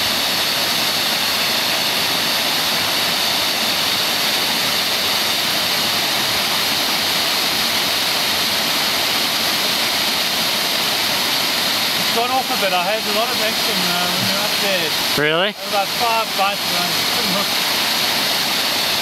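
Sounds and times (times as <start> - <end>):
waterfall roaring: 0.0 - 19.0.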